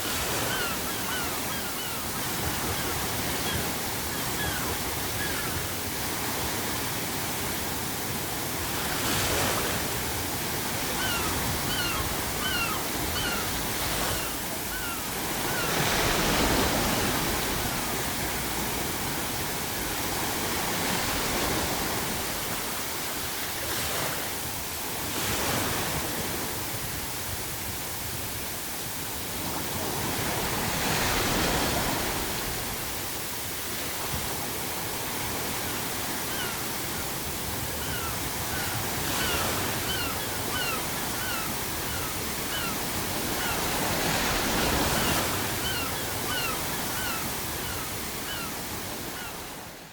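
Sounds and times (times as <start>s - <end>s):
ocean waves breaking: 0.0s - 27.4s, 29.0s - 49.9s
faint seagull calls: 0.1s - 5.7s, 10.9s - 17.4s, 35.6s - 49.5s.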